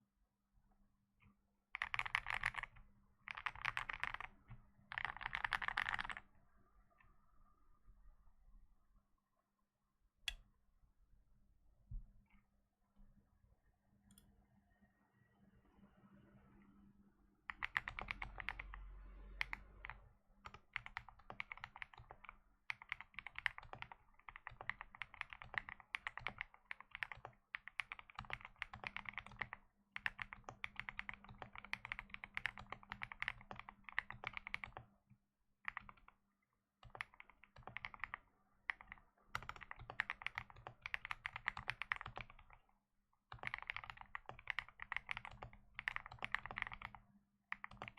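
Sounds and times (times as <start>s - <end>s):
mechanical keyboard typing: 1.8s - 6.2s, 17.5s - 34.9s, 35.6s - 36.2s, 36.8s - 42.6s, 43.3s - 47.9s.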